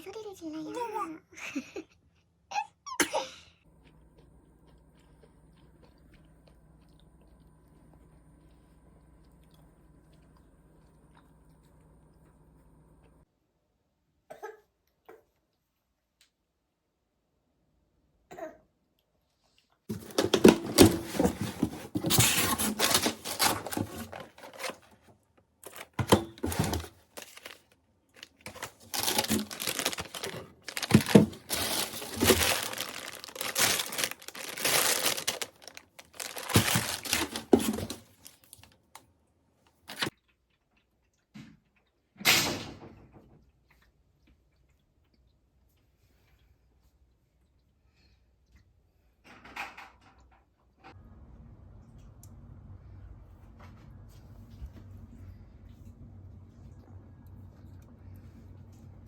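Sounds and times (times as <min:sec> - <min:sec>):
crinkling and tearing: 0:19.9 - 0:38.8.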